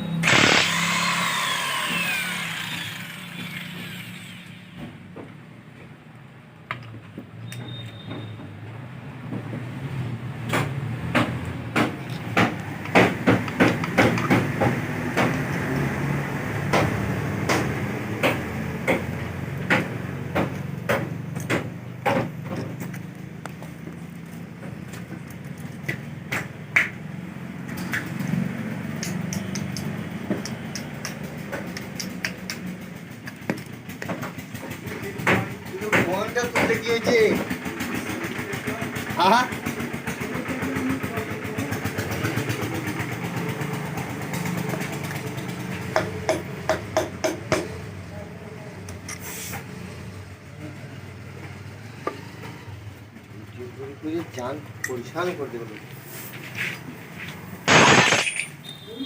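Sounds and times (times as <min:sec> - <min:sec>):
hand tools knocking metal: 0:11.2 - 0:15.6, 0:29.0 - 0:37.6.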